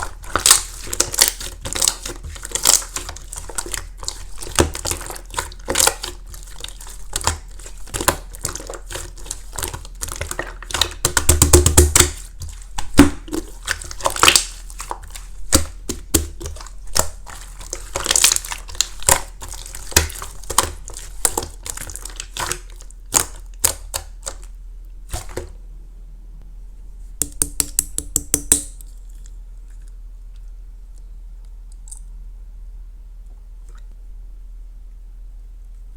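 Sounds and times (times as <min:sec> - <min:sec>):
slime squished by hand: 0:00.0 - 0:24.5
crackling pops and clicks: 0:27.2 - 0:28.9.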